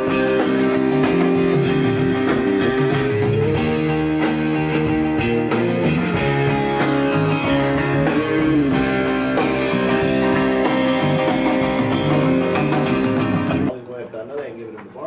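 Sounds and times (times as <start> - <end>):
guitar-led rock music: 0.0 - 13.7.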